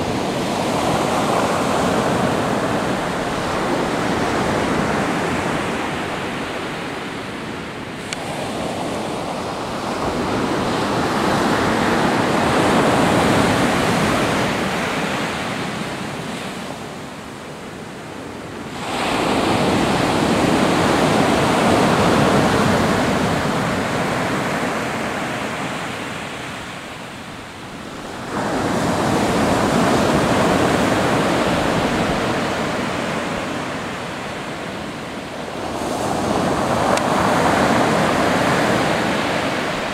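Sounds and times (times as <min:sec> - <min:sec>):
wave crashing: 0:00.0 - 0:07.4, 0:27.9 - 0:39.9
waves breaking on shore: 0:00.0 - 0:39.9.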